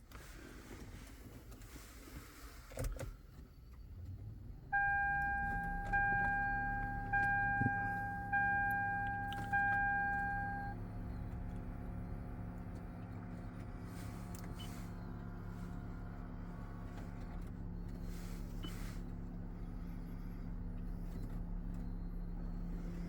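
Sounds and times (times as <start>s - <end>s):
dashboard warning chime: 4.7s - 10.8s
steady low hum: 4.7s - 12.6s.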